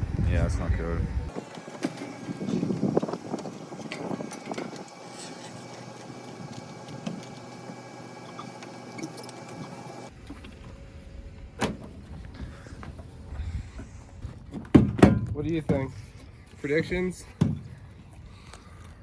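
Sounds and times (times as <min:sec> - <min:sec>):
low rumble: 0:00.0 - 0:01.3.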